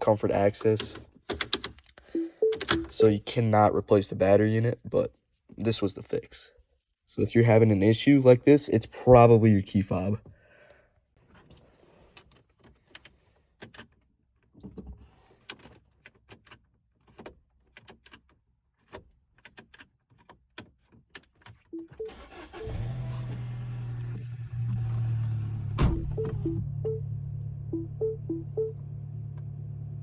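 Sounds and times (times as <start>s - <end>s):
short beeping tones: 2.2s - 3.1s, 21.8s - 22.2s, 25.9s - 27.0s, 27.7s - 28.8s.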